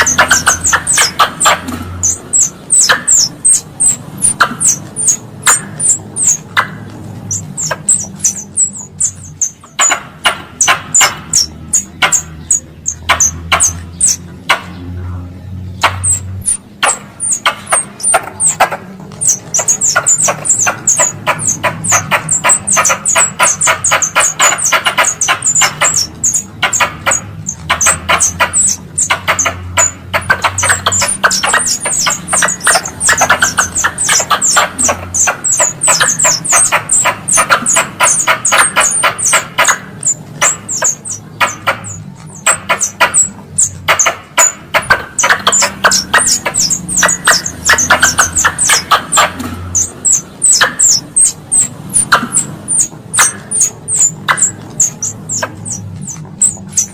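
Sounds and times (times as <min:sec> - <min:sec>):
squirrel call chattering chirps: 0:00.0 - 0:14.9, 0:15.7 - 0:56.9.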